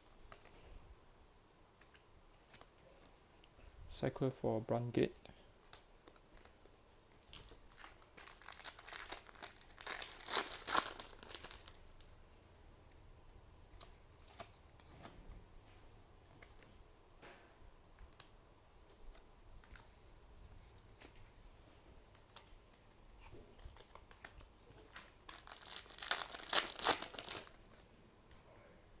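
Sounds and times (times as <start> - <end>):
wrapper crinkling and tearing: 7.2 - 12.0, 23.6 - 27.8.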